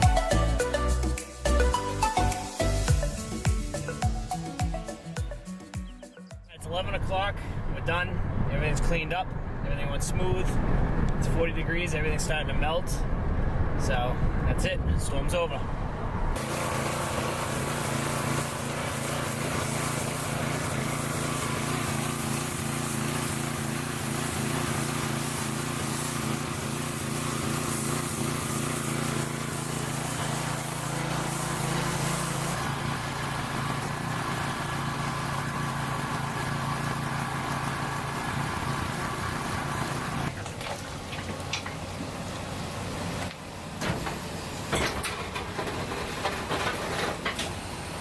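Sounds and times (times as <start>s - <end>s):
vehicle engine humming: 0.0s - 48.0s
broad hiss: 16.4s - 40.3s.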